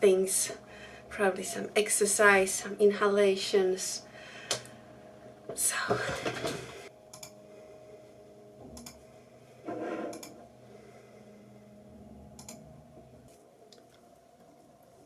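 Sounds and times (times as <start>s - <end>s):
faint steady hum: 0.0s - 15.0s
faint clicks: 12.4s - 12.6s.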